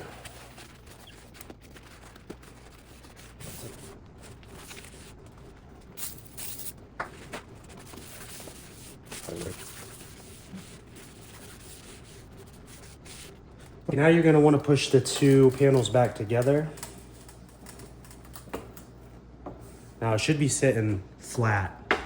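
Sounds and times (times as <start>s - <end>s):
cloth rubbing on glass: 7.4s - 13.4s.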